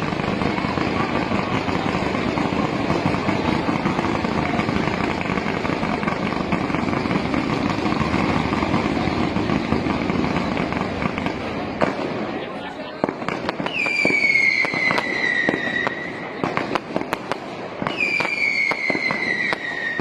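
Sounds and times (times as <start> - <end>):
fireworks crackling and hissing: 0.0 - 20.0.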